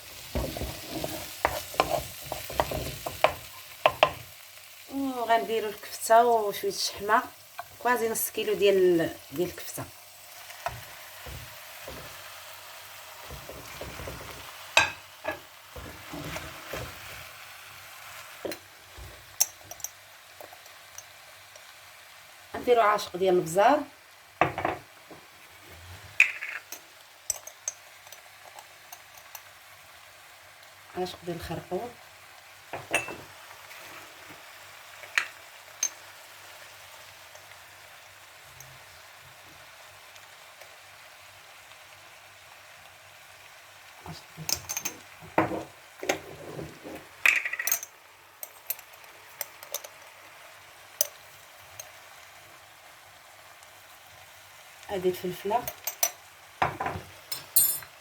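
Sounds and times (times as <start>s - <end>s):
meat sizzling in oil: 0.0s - 58.0s
spoon knocking and scraping pan: 0.2s - 4.3s, 10.5s - 12.4s, 13.2s - 17.3s, 18.4s - 21.7s, 24.4s - 29.5s, 32.7s - 33.4s, 44.4s - 50.1s, 55.6s - 58.0s
utensil clinking against dish: 26.2s - 28.2s, 32.8s - 33.2s, 44.5s - 45.0s.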